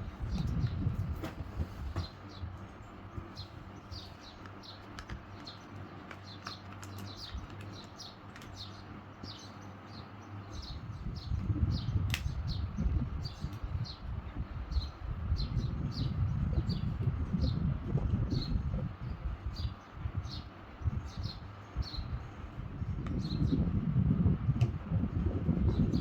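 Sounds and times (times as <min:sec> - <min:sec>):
bird chirping: 0:02.0 - 0:14.1, 0:18.3 - 0:22.3
low rumbling noise: 0:10.4 - 0:26.0.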